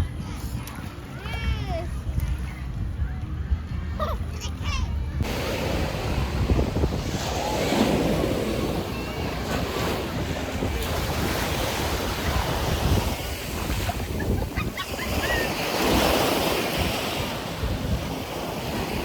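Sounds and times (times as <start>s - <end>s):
wind buffeting microphone: 0.0s - 19.0s
sea waves breaking: 5.2s - 19.0s.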